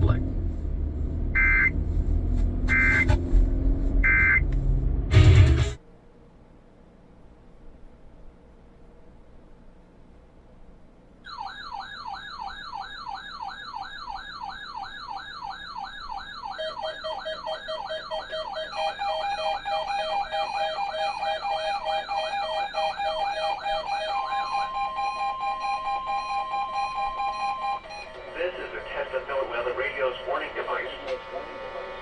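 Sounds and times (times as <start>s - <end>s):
warbling electronic alarm: 1.4s - 1.7s, 2.7s - 3.2s, 4.0s - 4.4s, 11.3s - 32.0s
pulsing electronic beeps: 1.4s - 1.8s, 2.7s - 3.2s, 4.0s - 4.5s, 15.3s - 30.6s
steady alert tone: 16.5s - 24.8s.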